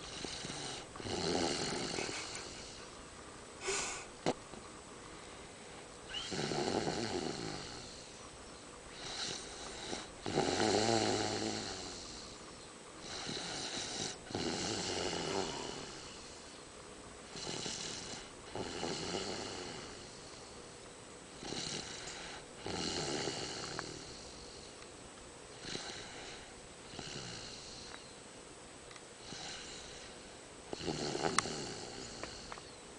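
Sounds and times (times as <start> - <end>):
toddler snoring: 0.0 - 2.8, 6.1 - 8.2, 8.9 - 12.4, 13.0 - 16.5, 17.3 - 20.6, 21.4 - 24.8, 25.6 - 28.0, 29.2 - 32.6.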